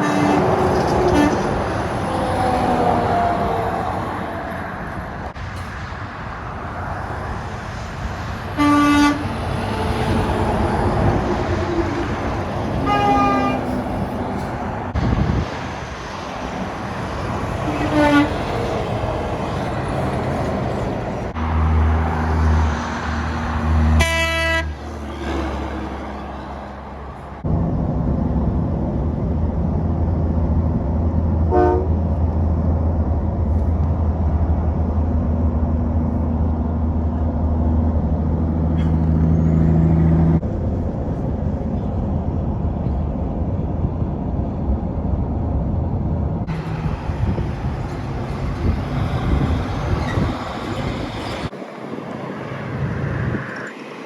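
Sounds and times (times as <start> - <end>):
horn toot: 0.0 - 1.5, 8.6 - 9.3, 12.8 - 13.8, 17.6 - 18.6, 24.0 - 24.8
heavy vehicle engine drone: 0.0 - 54.0.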